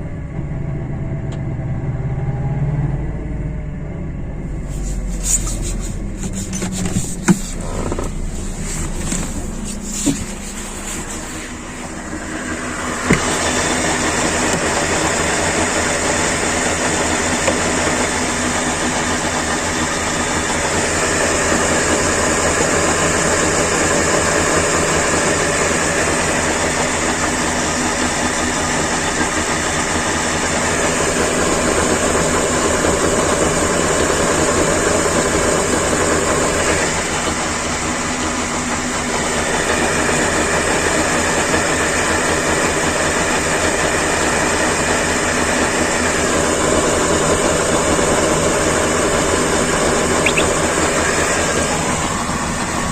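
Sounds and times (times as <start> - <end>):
car wheel bearing hum: 4.0 - 52.9
higher steady tone: 50.2 - 51.5.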